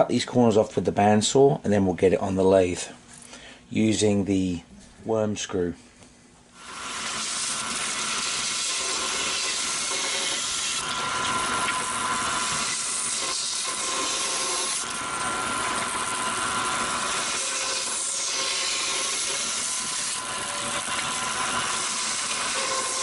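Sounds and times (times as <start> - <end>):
bandsaw cutting wood: 6.6 - 23.0.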